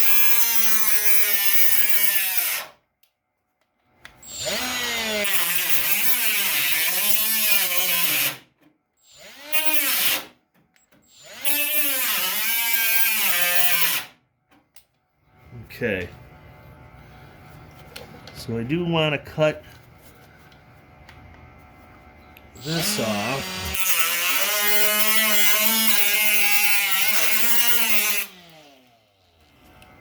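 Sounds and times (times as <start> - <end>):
power tool cutting sheet metal: 0.0 - 2.7, 4.2 - 8.4, 9.1 - 10.3, 11.1 - 14.2, 22.6 - 29.1.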